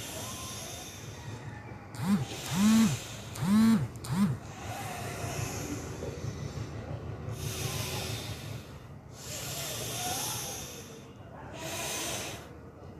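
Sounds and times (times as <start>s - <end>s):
person breathing forcefully: 0.0s - 12.8s.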